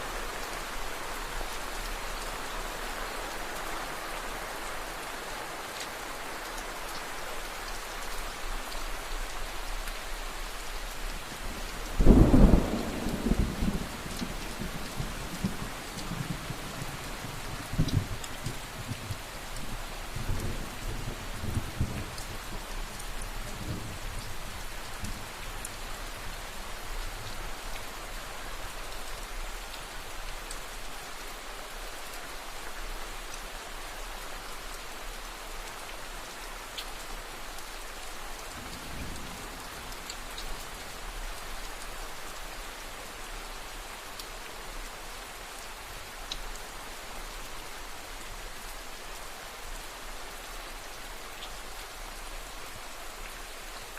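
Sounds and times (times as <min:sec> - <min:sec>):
steady rain falling: 0:00.0 - 0:53.9
distant thunder rumbling: 0:12.0 - 0:17.0.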